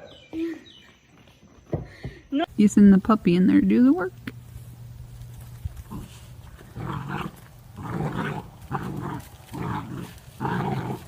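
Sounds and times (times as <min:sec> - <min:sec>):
dog growling: 0:05.8 - 0:11.0.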